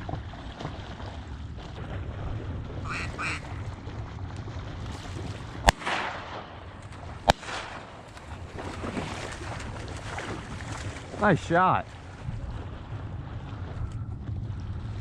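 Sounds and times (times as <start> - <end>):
water noise: 0.0 - 15.0
wind: 0.0 - 15.0
duck quacks: 2.8 - 3.6
shotgun shots: 5.6 - 6.6, 7.2 - 8.0.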